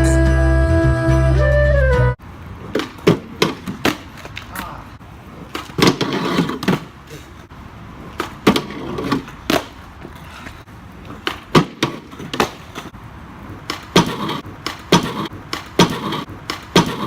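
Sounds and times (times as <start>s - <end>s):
skateboard rolling on pavement: 2.6s - 17.0s
skateboard clacking on ground: 5.4s - 7.5s, 8.1s - 13.0s, 13.6s - 17.0s.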